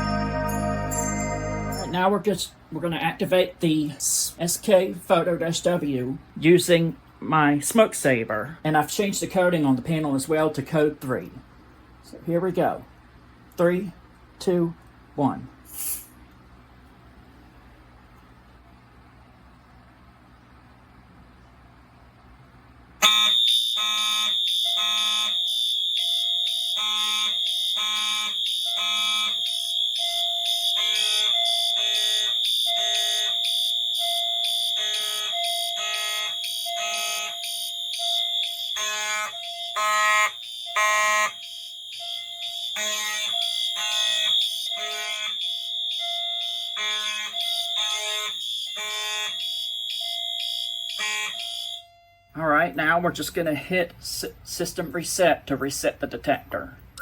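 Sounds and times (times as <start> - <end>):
fire alarm horn blasts: 0.0 - 2.1, 23.0 - 52.4
continuous high-pitched tone: 0.0 - 2.4, 23.0 - 53.3.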